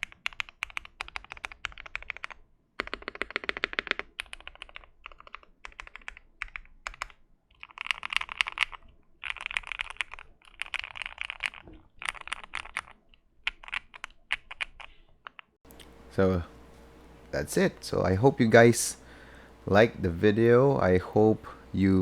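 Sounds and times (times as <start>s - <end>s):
mechanical keyboard typing: 0.0s - 15.5s.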